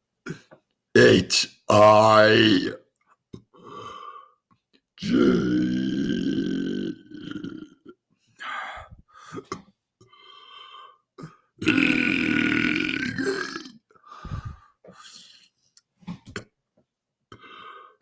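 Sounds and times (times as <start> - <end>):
man belching: 1.0 - 2.8, 5.0 - 7.9, 11.6 - 13.8.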